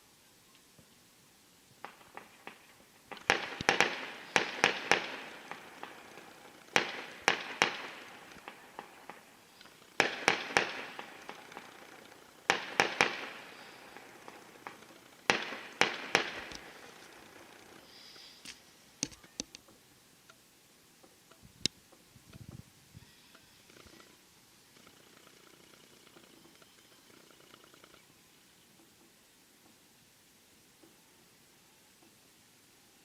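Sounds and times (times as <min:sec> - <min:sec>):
fireworks bangs with crackle: 0:01.8 - 0:18.6
small pops: 0:01.8 - 0:19.8.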